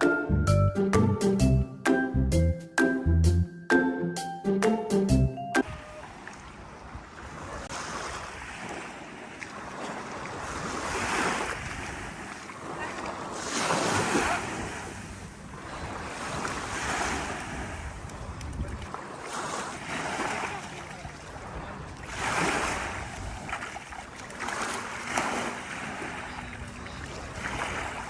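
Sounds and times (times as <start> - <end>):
waves washing onto sand: 5.6 - 28.0
wind rumbling on microphone: 5.6 - 28.0.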